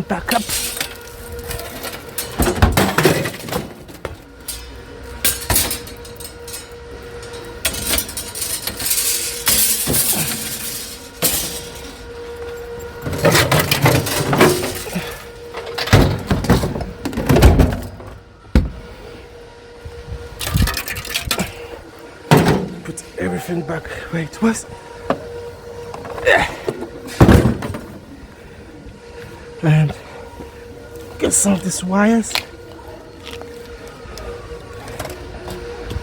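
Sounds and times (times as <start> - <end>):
household junk clunking and scraping: 0.0 - 19.2, 20.2 - 23.2, 24.4 - 32.6.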